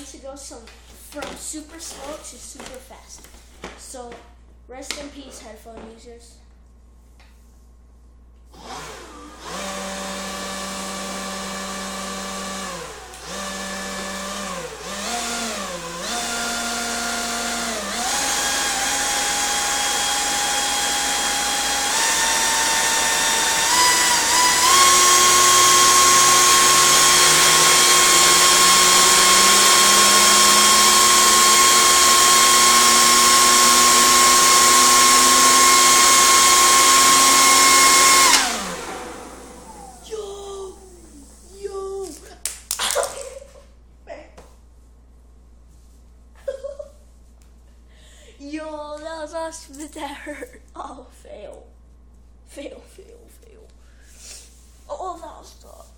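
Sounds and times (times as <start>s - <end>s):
leaf blower whine: 8.6s - 41.9s.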